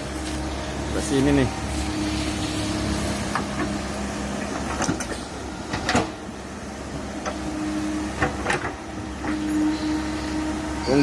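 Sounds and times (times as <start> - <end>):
excavator diesel engine running: 0.0 - 11.0
digging knocks and creaks: 3.2 - 3.8, 4.4 - 6.2, 8.1 - 9.7.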